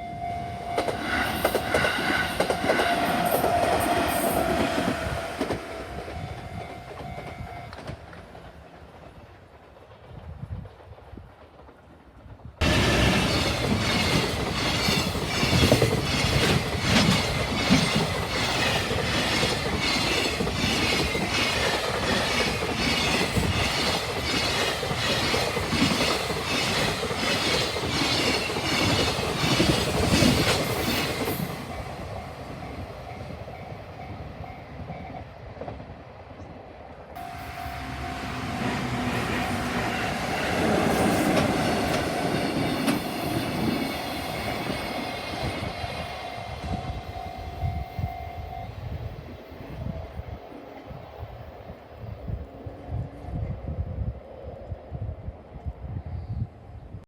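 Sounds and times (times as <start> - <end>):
train wheels clattering on rails: 0.8 - 35.9, 37.8 - 47.2.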